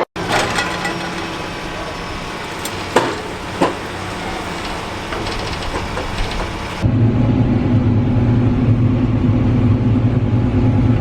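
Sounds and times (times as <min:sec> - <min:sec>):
sharp knocks: 0:00.0 - 0:06.8
vehicle engine running: 0:00.0 - 0:06.9.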